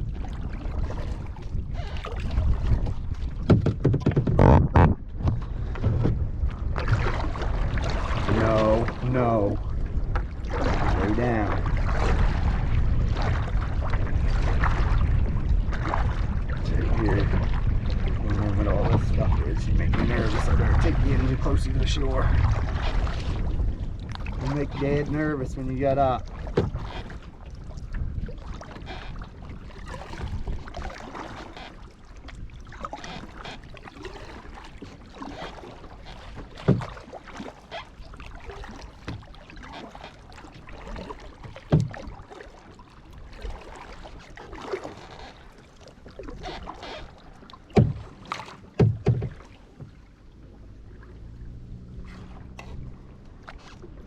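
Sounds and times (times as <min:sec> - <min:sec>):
paddle strokes splashing in water: 0:00.0 - 0:54.0
sharp knocks: 0:03.5 - 0:05.0, 0:47.7 - 0:48.1, 0:48.7 - 0:49.4.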